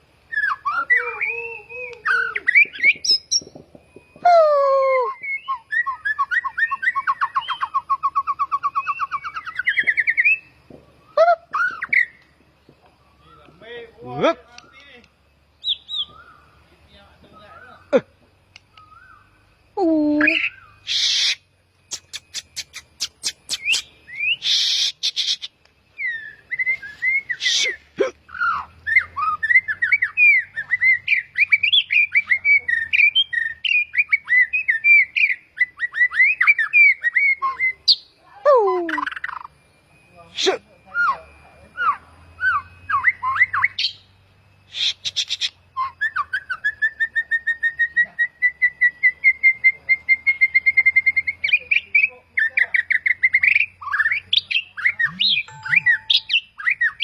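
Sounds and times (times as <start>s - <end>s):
bird warbling song: 0.3s - 3.8s, 4.9s - 39.5s, 41.8s - 57.0s
bird trill rising in pitch: 0.3s - 12.2s, 52.8s - 57.0s
harsh bird calls: 0.3s - 19.4s, 20.0s - 39.5s, 41.8s - 57.0s.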